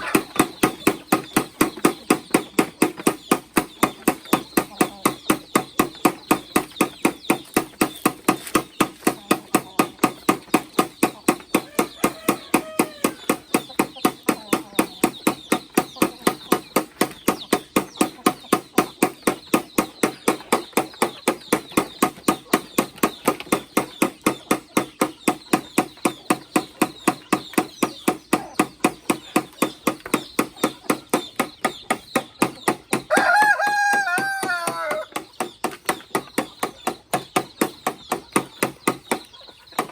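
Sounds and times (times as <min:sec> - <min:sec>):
rapid chopping strokes: 0:00.0 - 0:39.9
rooster crowing: 0:11.7 - 0:13.2, 0:33.1 - 0:35.1.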